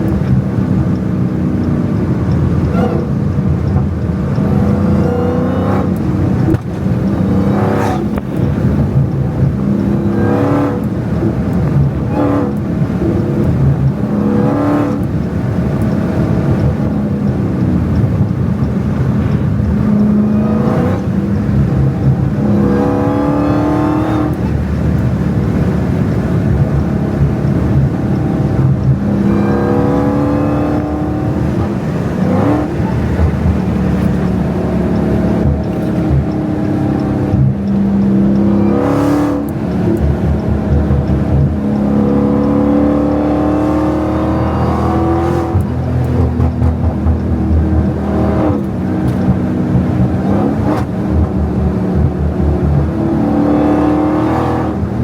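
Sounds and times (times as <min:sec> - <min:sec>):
car engine revving hard: 0:00.0 - 0:55.0
supercharger whine: 0:00.0 - 0:55.0.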